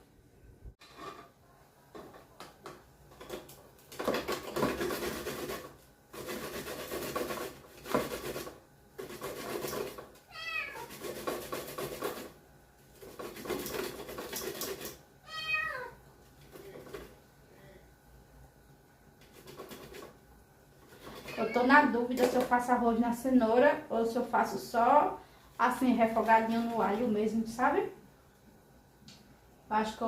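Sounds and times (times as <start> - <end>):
garlic being grated by hand: 4.1 - 15.0, 19.2 - 20.2
young cat meowing: 10.3 - 10.9, 15.2 - 16.0, 21.3 - 21.8.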